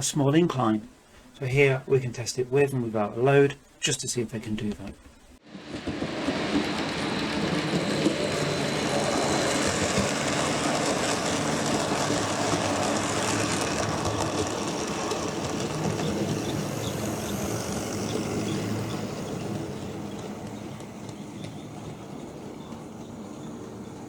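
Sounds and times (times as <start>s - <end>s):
model train whirring and rattling: 5.4s - 24.0s.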